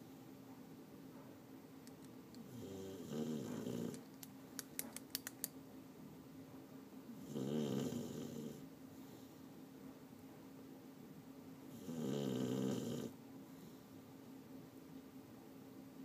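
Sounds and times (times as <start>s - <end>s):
person snoring: 2.5s - 4.0s, 7.2s - 8.6s, 11.8s - 13.2s
small sharp clicks: 3.9s - 5.6s.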